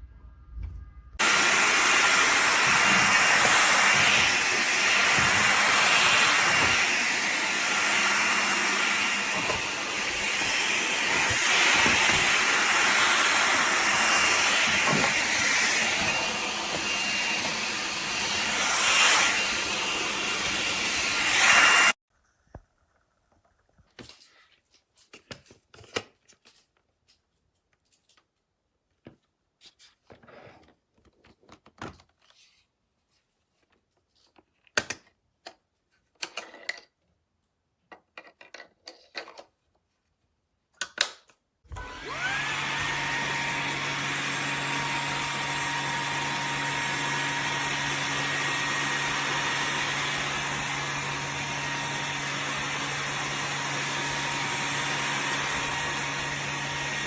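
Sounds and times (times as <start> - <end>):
stick vacuum motor whine: 1.2 - 22.0, 41.7 - 57.0.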